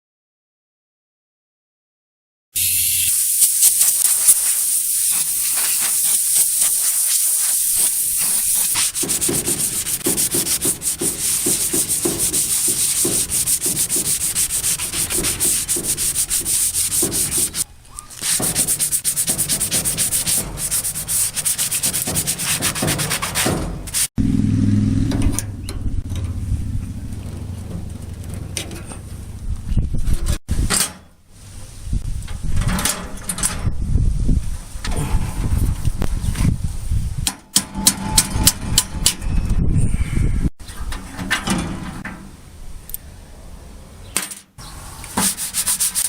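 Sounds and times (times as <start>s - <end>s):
abrasive rubbing on metal: 3.6s - 24.1s, 45.2s - 46.0s.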